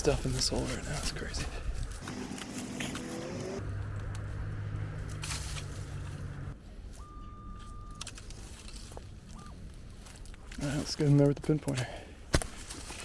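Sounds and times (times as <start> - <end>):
metal detector low drone: 2.0 - 9.0
metal detector higher beep: 6.9 - 8.1.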